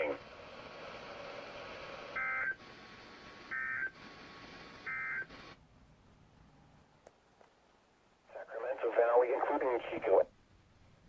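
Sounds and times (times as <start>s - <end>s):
radio hiss: 0.0s - 5.6s, 8.3s - 10.3s.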